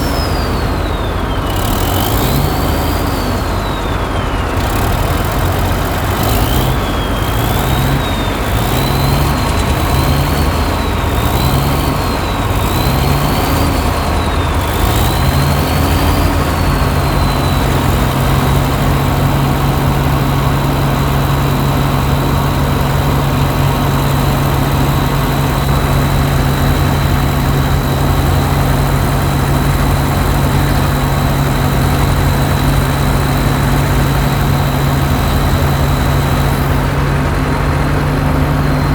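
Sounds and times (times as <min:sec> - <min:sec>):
heavy diesel engine revving: 0:00.0 - 0:38.9.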